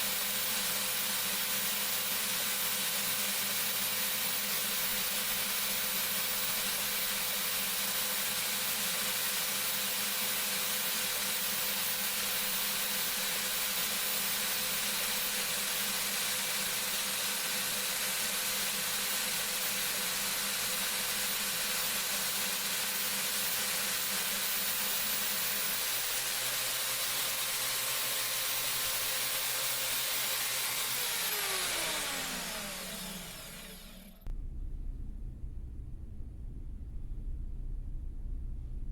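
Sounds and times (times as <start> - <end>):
band saw running: 0.0 - 34.3
saw motor whine spinning down: 19.9 - 34.4.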